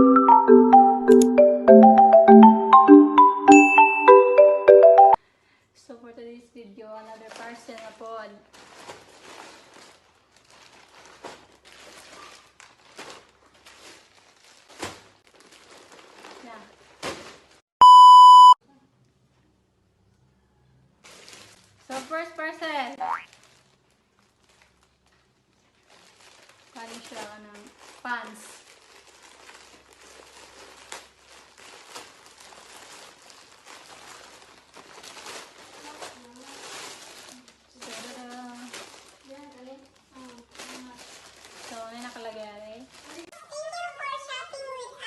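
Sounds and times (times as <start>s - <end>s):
plastic packaging crinkling: 7.1s - 17.6s, 21.0s - 22.5s, 23.1s - 43.8s.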